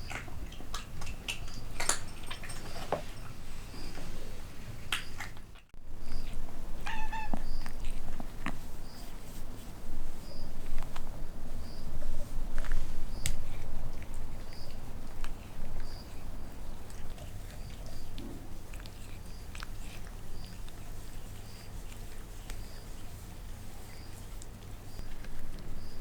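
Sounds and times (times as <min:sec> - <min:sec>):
kitten meowing: 0:06.8 - 0:07.7.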